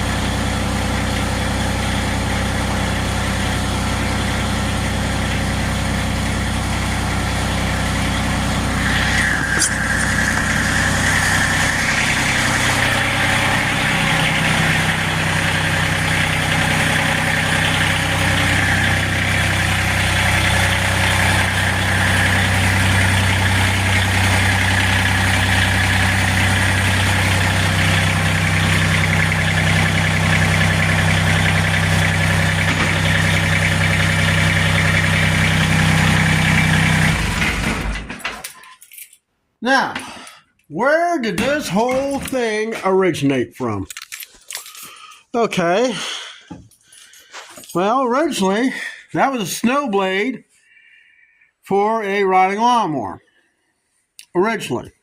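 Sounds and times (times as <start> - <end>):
small tractor engine idling: 0.0 - 38.4
steady high whine: 7.8 - 35.0.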